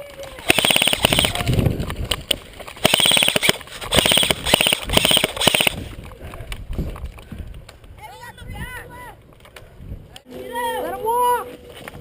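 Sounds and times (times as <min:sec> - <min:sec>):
airsoft guns firing bursts: 0:00.4 - 0:01.5, 0:02.8 - 0:05.9.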